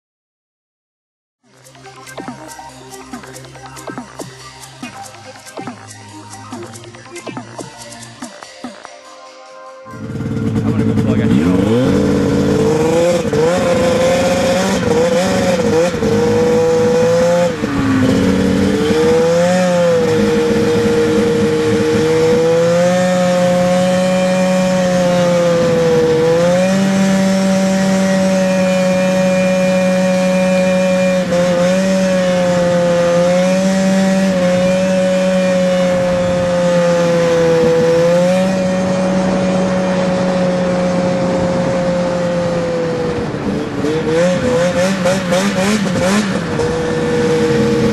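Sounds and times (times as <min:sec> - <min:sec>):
small engine at high revs: 0:09.9 - 0:47.9.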